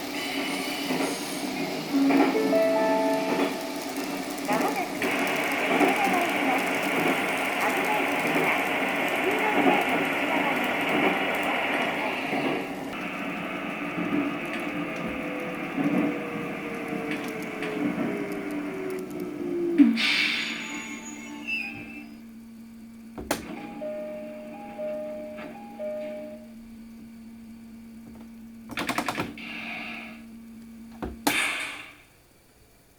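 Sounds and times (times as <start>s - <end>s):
air hiss: 0.0s - 5.9s, 19.8s - 21.9s, 29.4s - 30.3s, 31.2s - 32.2s
train motor whine falling: 0.0s - 28.8s
electric train running: 0.0s - 31.3s
electric hum: 1.7s - 9.5s, 12.7s - 32.6s.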